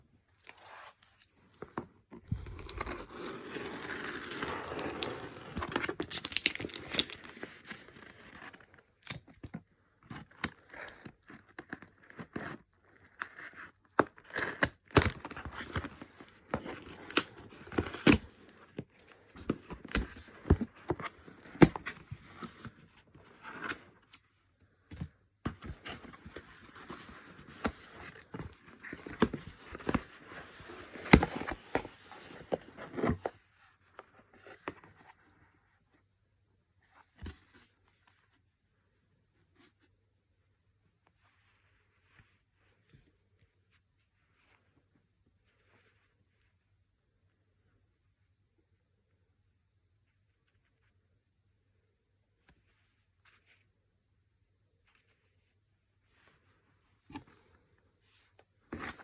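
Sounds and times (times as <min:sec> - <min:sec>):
packaging crinkling and tearing: 0:02.3 - 0:07.6.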